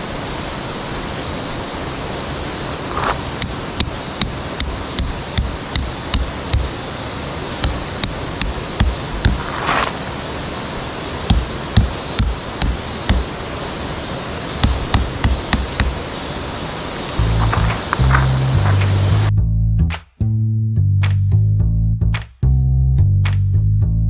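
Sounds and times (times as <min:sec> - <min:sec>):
high chorus of insects: 0:00.0 - 0:19.3
sharp hammer blows: 0:11.3 - 0:13.3, 0:14.6 - 0:16.0.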